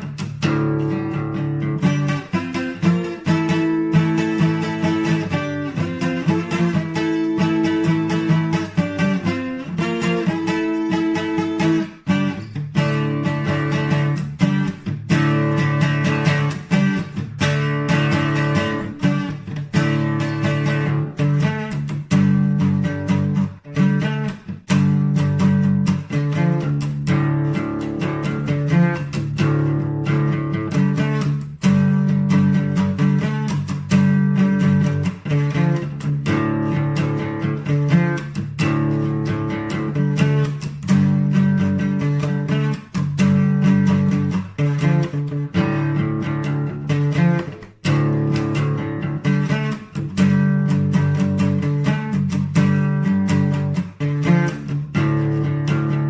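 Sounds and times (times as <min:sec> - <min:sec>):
guitar instrumental music: 0:00.0 - 0:56.0
strummed guitar chords: 0:00.0 - 0:56.0.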